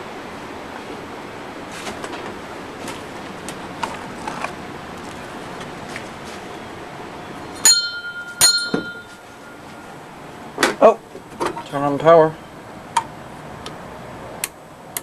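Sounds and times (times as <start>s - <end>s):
sharp metallic clinks: 7.5s - 9.6s.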